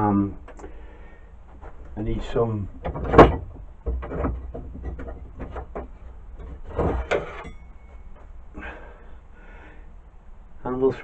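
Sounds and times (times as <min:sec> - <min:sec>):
objects handled on workbench: 0:02.9 - 0:08.4.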